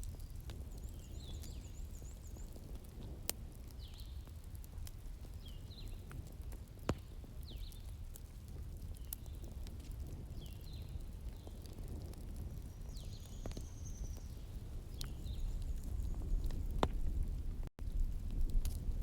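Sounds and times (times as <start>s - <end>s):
wood fire crackling: 0.0s - 19.0s.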